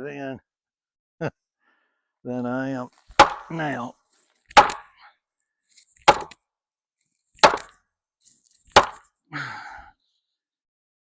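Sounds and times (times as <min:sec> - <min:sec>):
tool striking wood: 0:03.1 - 0:03.6, 0:04.5 - 0:05.0, 0:06.0 - 0:06.4, 0:07.4 - 0:07.8, 0:08.7 - 0:09.1.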